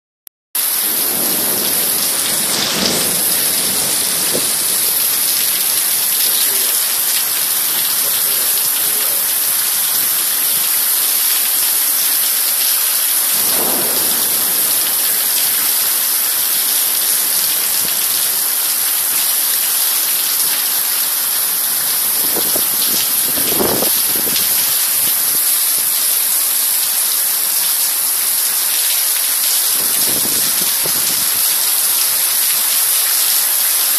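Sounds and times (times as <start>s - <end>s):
heavy rain: 0.6s - 33.9s
low rumbles: 0.9s - 10.9s, 13.2s - 18.4s.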